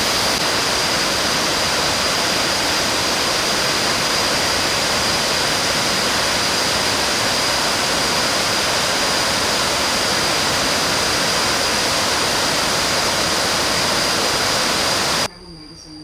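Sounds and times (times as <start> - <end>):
waterfall rushing: 0.0 - 15.3.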